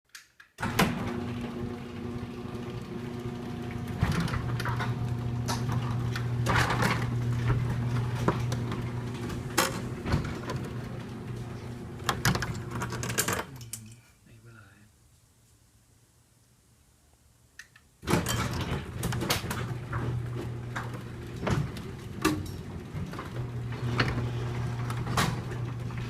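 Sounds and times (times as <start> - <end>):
machine humming: 0.6 - 13.0, 18.5 - 26.0.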